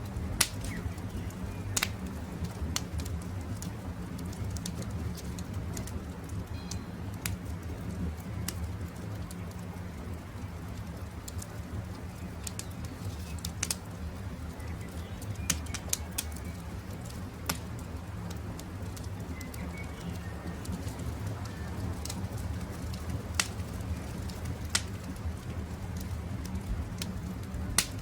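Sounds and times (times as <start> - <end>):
campfire crackling and popping: 0.0 - 28.0
faint birds calling: 18.9 - 22.4.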